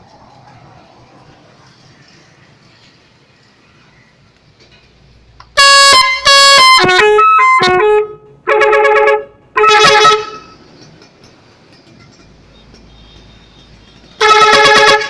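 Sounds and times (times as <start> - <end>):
musical vehicle horn blasts: 5.6 - 10.6, 12.9 - 15.0.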